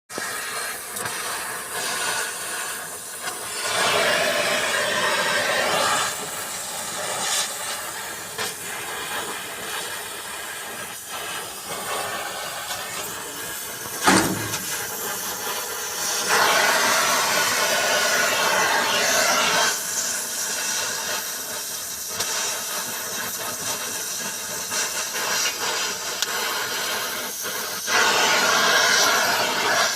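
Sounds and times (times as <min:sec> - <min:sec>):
welding torch flame hissing: 0:00.1 - 0:29.9
sharp torch pop: 0:13.8 - 0:15.7.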